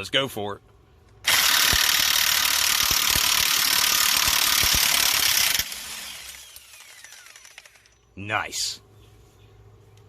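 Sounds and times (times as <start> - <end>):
impact wrench hammering: 1.3 - 7.9.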